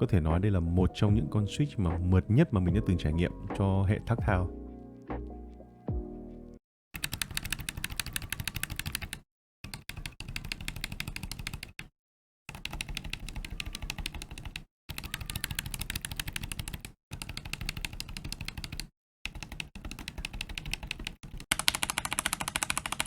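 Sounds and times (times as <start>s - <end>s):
mechanical keyboard typing: 7.0s - 11.9s, 12.5s - 23.0s.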